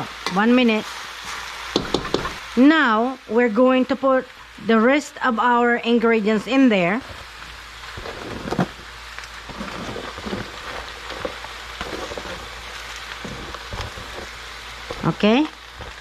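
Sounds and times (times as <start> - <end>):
vegetables sizzling in a pan: 0.0 - 16.0.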